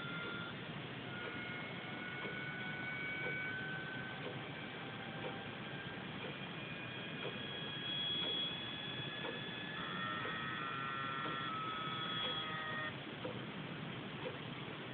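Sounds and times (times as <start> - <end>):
high-pitched electronic whining: 0.0 - 13.0
faint ticks: 1.2 - 2.5, 5.2 - 5.6, 6.2 - 6.5, 7.1 - 12.5.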